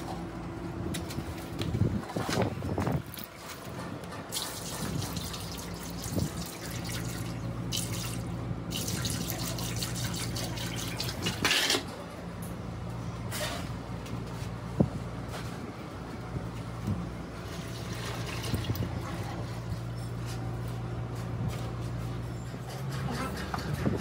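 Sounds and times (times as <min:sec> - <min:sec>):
liquid dripping and splashing: 0:04.3 - 0:11.4.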